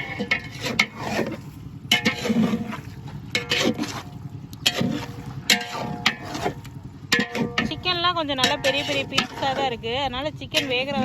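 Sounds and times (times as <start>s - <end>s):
metal ladle scraping a pot: 0.0s - 11.0s.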